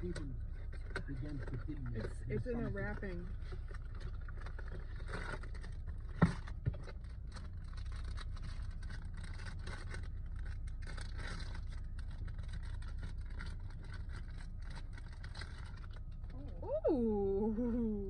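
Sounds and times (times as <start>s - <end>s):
wrapping crinkling and tearing: 3.3s - 16.6s.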